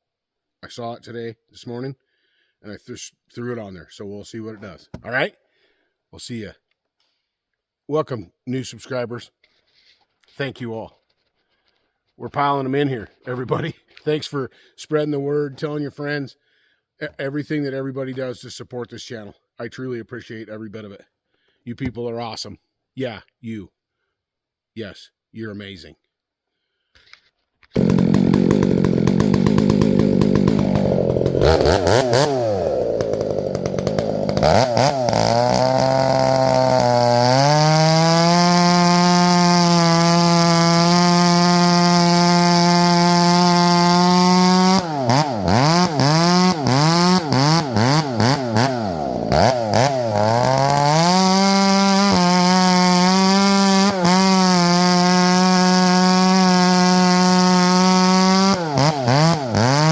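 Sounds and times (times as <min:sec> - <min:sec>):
chainsaw cutting firewood: 0:27.7 - 0:59.9.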